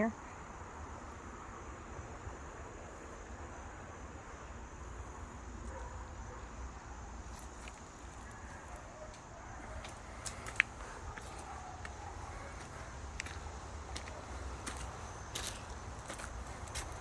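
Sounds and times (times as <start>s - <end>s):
footsteps on forest trail: 7.3s - 17.0s.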